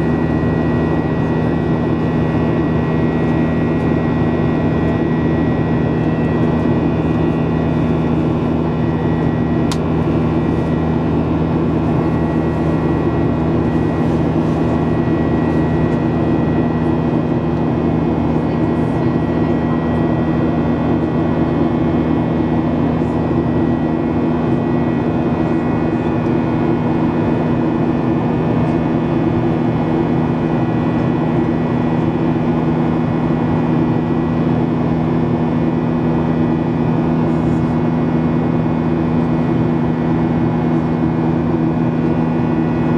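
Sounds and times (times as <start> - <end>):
high steady whine: 0.0 - 42.9
jet engines droning hum: 0.0 - 42.9
small click: 9.7 - 9.9.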